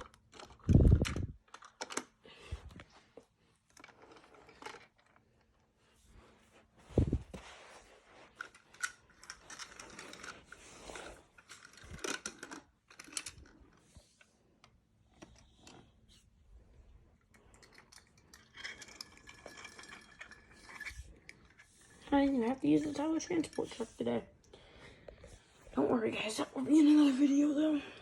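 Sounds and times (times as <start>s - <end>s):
handling clicks and rustles: 0.0s - 5.8s, 6.5s - 16.1s.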